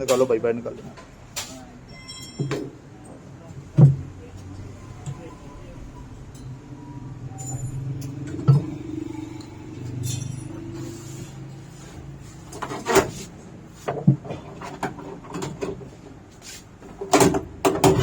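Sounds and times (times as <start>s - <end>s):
washing machine parts clattering: 16.9s - 18.0s.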